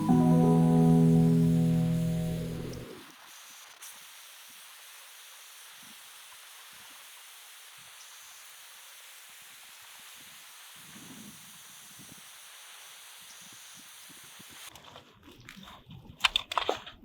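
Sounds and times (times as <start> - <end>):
faint outdoor hiss: 0.0 - 3.3.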